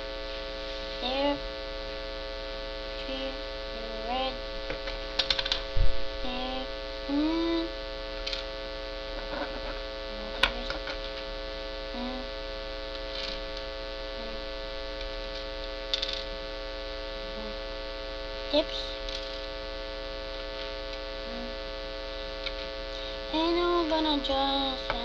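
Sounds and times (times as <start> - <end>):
electrical mains hum: 0.0 - 25.0
small plastic parts clicking: 5.2 - 5.6, 15.9 - 16.3.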